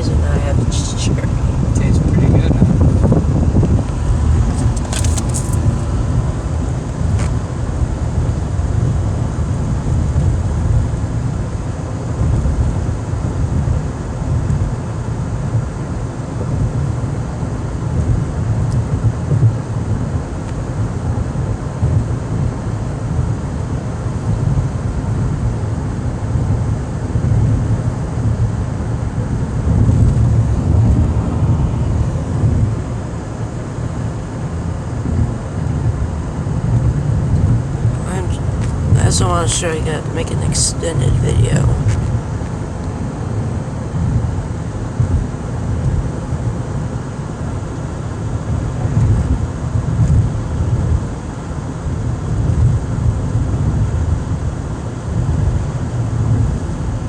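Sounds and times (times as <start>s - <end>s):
car interior rumble with hiss: 0.0s - 11.0s.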